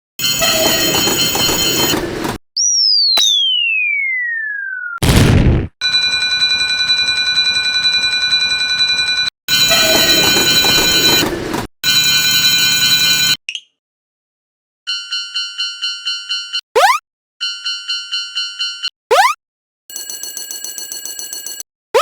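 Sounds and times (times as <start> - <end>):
railroad crossing warning bells: 0.2 - 2.0, 5.8 - 13.4
cartoon falling whistle: 2.6 - 5.0, 16.8 - 17.0, 19.1 - 19.4.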